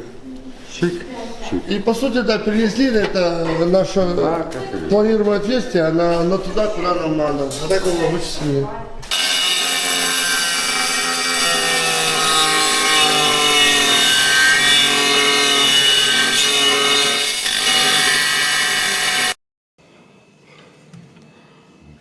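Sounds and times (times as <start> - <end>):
power tool cutting tile: 9.1 - 19.4.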